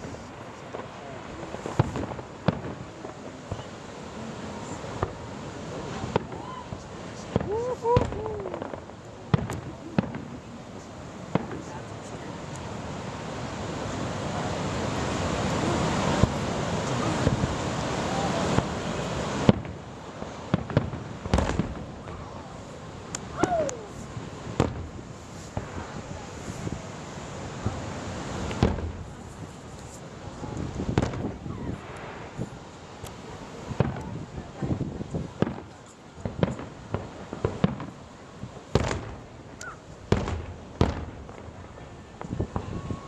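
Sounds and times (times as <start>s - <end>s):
fireworks bangs: 0.0s - 43.0s
fireworks crackling pops: 0.0s - 43.0s
loud firework bangs with echo: 19.4s - 19.8s, 20.4s - 22.3s, 24.4s - 26.8s, 28.4s - 29.2s, 30.8s - 32.4s, 33.7s - 34.2s, 35.4s - 37.9s, 38.7s - 43.0s.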